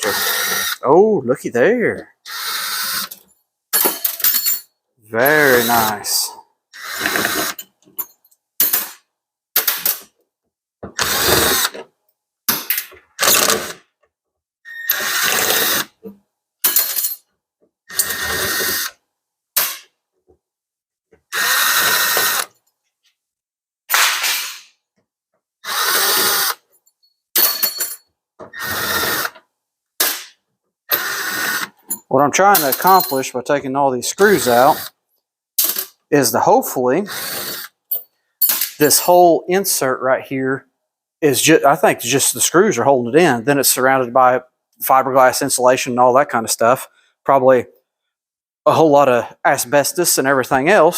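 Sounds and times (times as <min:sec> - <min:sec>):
power drill backing out screws: 0:06.8 - 0:07.6, 0:14.8 - 0:15.8, 0:21.4 - 0:22.6, 0:28.5 - 0:29.4.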